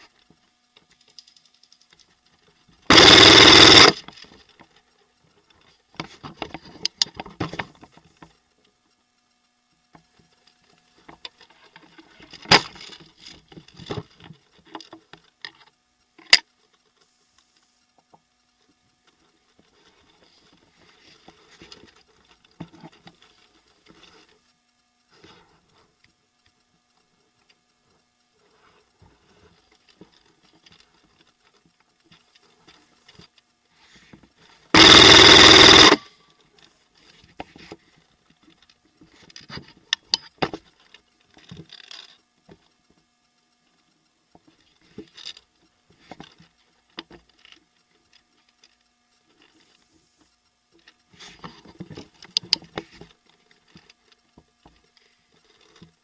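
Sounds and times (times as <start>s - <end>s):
clicks and rustles of gear: 0.0s - 9.1s, 9.7s - 56.0s
airsoft gun full-auto burst: 2.9s - 4.0s, 34.8s - 36.1s.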